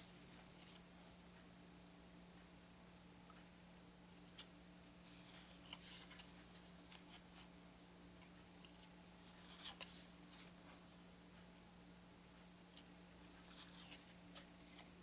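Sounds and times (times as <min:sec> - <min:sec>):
cardboard cards being handled: 0:04.4 - 0:07.5, 0:08.7 - 0:10.8, 0:12.8 - 0:15.0.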